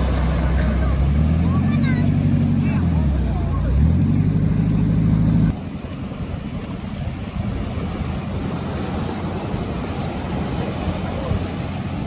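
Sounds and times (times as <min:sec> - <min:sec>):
surf: 0:00.0 - 0:12.0
wind rumbling on microphone: 0:05.4 - 0:12.0.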